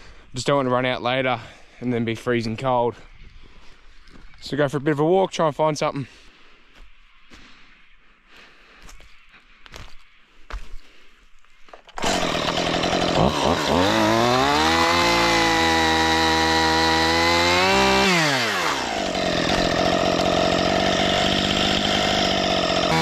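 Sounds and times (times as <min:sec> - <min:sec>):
chainsaw running: 0:12.0 - 0:23.0.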